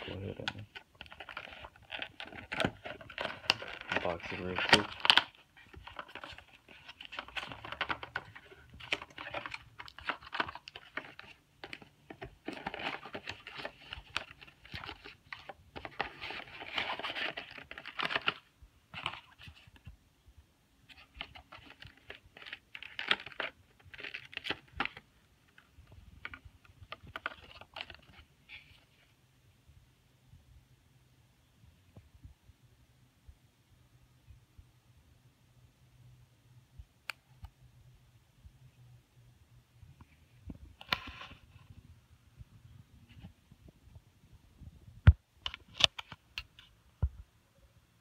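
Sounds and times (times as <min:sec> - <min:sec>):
packaging clicking and crinkling: 0:00.0 - 0:19.9, 0:20.9 - 0:28.7.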